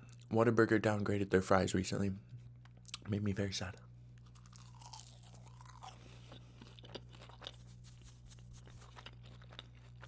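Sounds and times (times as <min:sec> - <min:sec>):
faint low hum: 0:00.0 - 0:10.0
person chewing crunchy food: 0:04.2 - 0:10.0.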